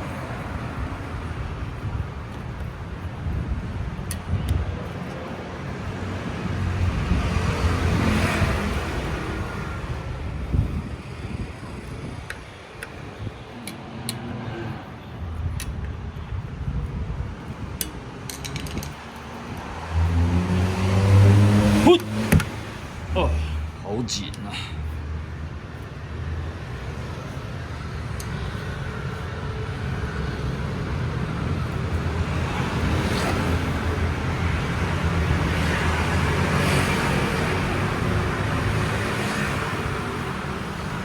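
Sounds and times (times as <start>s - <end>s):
sharp metal clicks and knocks: 17.8s - 19.6s.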